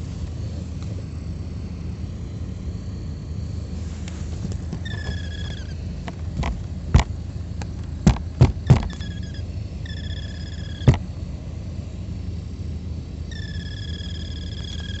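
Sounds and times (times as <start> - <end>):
blower motor whirring: 0.0 - 15.0
sharp taps on motor: 6.0 - 9.2
high chirp: 8.9 - 10.9, 13.3 - 15.0.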